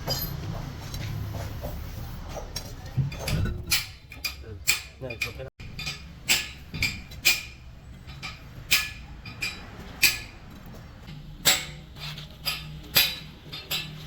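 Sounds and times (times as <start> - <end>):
hammer striking metal: 3.7 - 7.6, 8.2 - 10.4.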